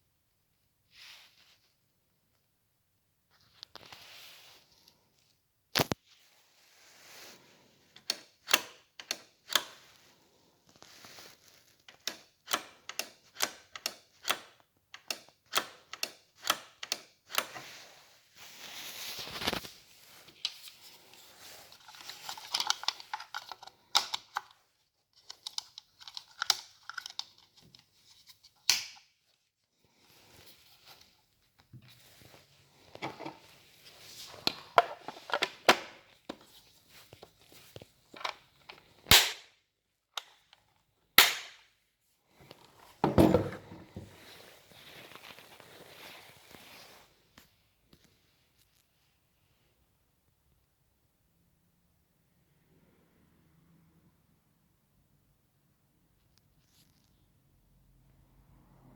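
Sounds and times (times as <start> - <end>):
packaging rustling and crinkling: 43.9 - 47.1.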